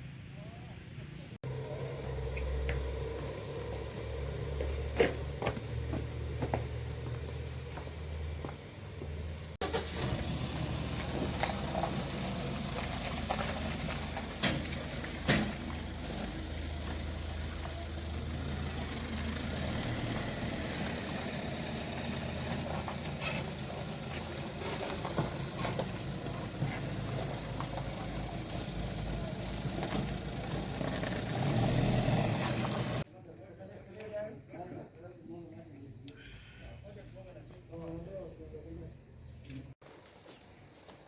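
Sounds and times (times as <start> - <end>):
low engine hum: 1.4 - 33.1.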